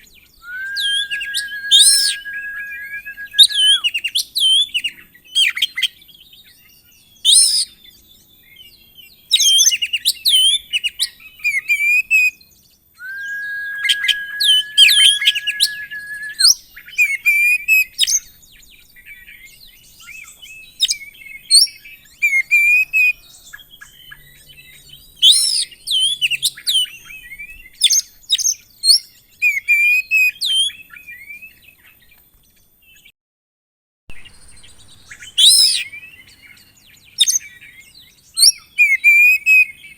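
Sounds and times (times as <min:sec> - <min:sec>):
bird singing varied whistles: 0:00.4 - 0:04.6, 0:13.0 - 0:16.6.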